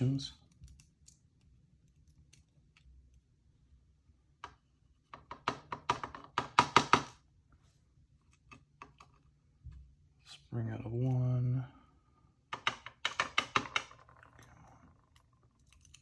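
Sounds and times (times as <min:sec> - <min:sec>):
metal lock parts clicking: 0:12.6 - 0:16.0.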